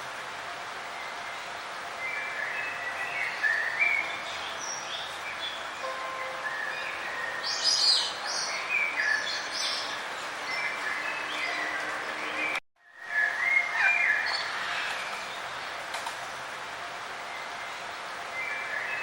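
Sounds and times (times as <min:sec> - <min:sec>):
steady hiss: 0:00.0 - 0:11.0
birds chirping: 0:00.8 - 0:19.0.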